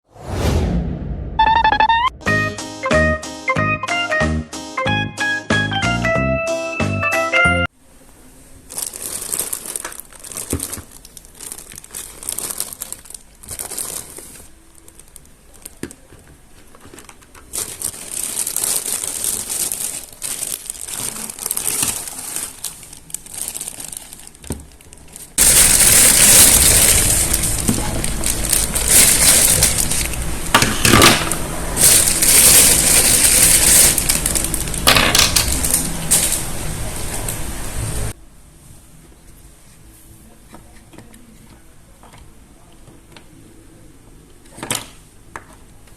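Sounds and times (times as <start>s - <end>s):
plastic packaging crinkling: 8.6s - 37.4s.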